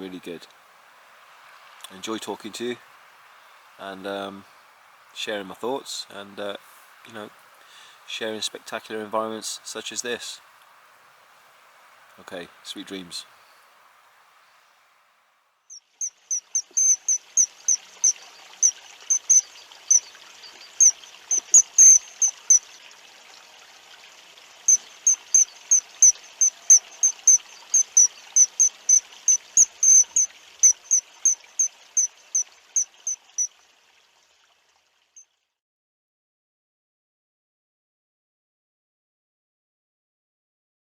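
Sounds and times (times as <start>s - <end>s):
stream rushing: 15.9s - 33.4s
short high chirps: 16.0s - 18.2s, 19.1s - 22.6s, 24.7s - 31.4s.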